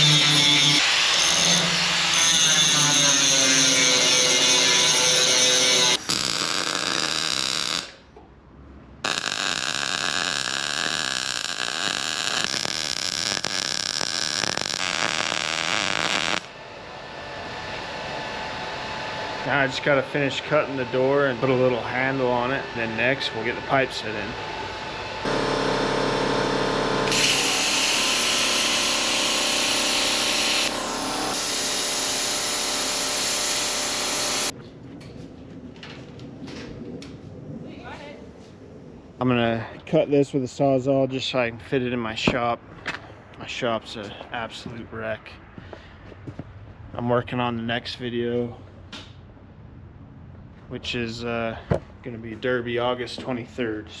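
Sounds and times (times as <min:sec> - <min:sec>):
power tool cutting steel: 0:00.0 - 0:08.0, 0:09.1 - 0:16.5, 0:25.3 - 0:34.5
welding arc crackling: 0:03.8 - 0:08.1, 0:09.0 - 0:16.5, 0:25.3 - 0:34.5.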